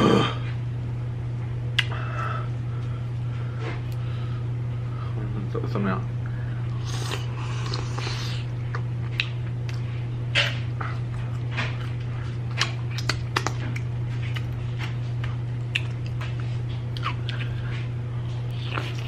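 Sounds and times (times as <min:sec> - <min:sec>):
steady low hum: 0:00.0 - 0:19.0
wet mouth smacks: 0:01.8 - 0:02.0, 0:07.0 - 0:09.8, 0:12.5 - 0:17.5
crunchy chewing: 0:06.7 - 0:19.0.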